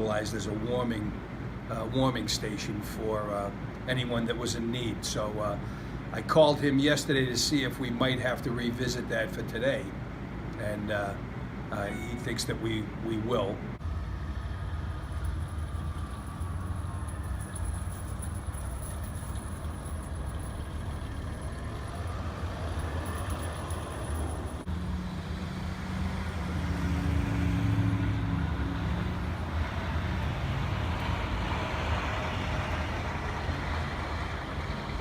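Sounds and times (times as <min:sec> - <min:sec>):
road noise: 0:00.0 - 0:35.0
vehicle engine rumble: 0:05.1 - 0:35.0
heavy vehicle passing: 0:13.8 - 0:35.0.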